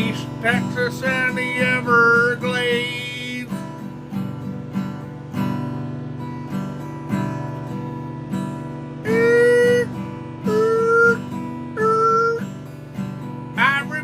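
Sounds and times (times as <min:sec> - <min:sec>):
acoustic guitar strumming: 0:00.0 - 0:14.0
long held notes: 0:09.0 - 0:12.8.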